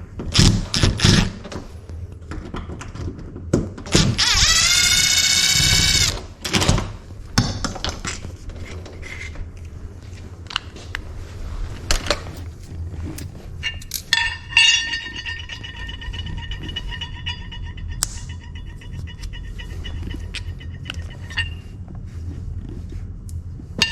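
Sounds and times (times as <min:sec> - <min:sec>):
metal tools clinking on lock: 0:12.0 - 0:16.1
rapidly pulsing tone: 0:14.4 - 0:21.8.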